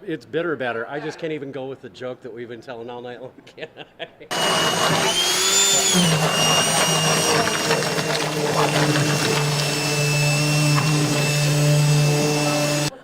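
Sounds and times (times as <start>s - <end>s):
electric mixer motor humming: 4.3s - 13.0s.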